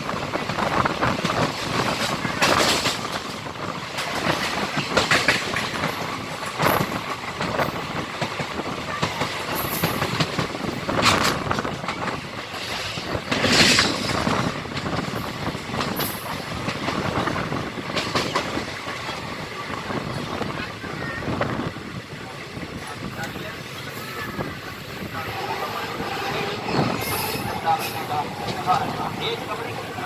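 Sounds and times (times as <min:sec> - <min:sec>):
wheels clattering over rail joints: 0:00.0 - 0:20.6
train wind and rolling wheels: 0:00.0 - 0:30.0.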